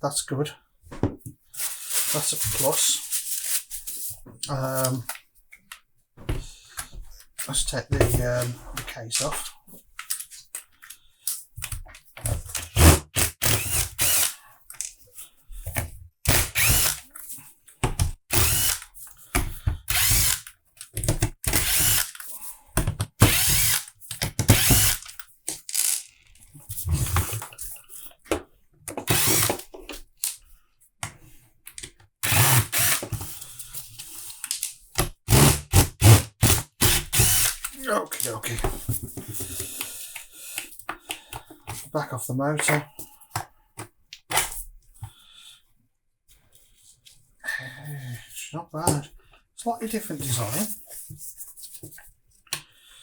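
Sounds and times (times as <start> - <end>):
cordless power driver bursts: 12.6 - 14.4, 16.3 - 17.0, 18.3 - 18.9, 19.9 - 20.5, 21.5 - 22.2, 23.2 - 25.0, 29.1 - 29.6, 32.2 - 33.2, 35.3 - 37.7.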